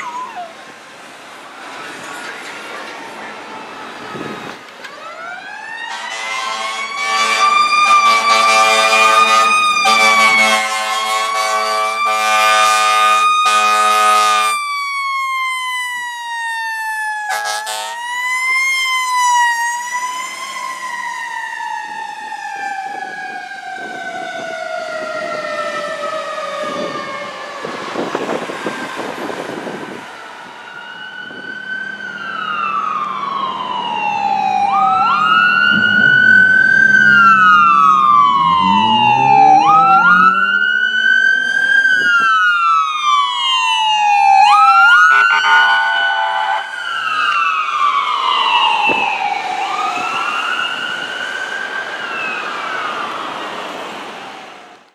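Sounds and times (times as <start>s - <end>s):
second siren: 0.0s - 0.7s, 1.7s - 54.9s
fire engine siren wailing: 0.0s - 54.9s
air horn blasts: 5.9s - 14.6s, 17.3s - 18.0s, 45.0s - 46.7s.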